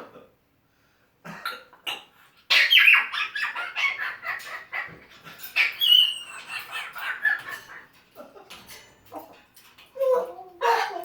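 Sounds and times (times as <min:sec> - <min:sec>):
parrot coughing and hacking: 0:01.2 - 0:05.8
parrot squawk: 0:02.5 - 0:05.0, 0:05.6 - 0:08.0.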